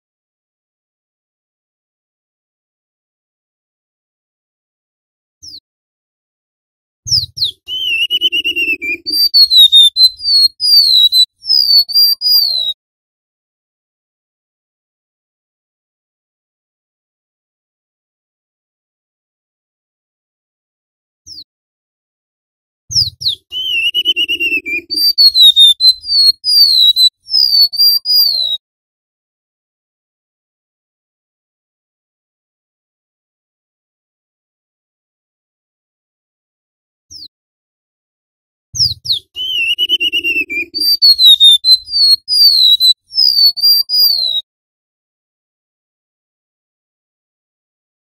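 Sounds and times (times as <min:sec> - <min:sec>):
bird singing high whistles: 0:07.1 - 0:12.8, 0:22.9 - 0:28.6, 0:38.8 - 0:44.4.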